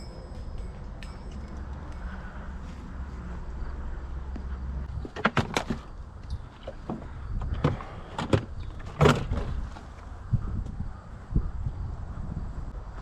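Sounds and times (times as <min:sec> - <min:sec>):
low hum: 0:00.0 - 0:05.1.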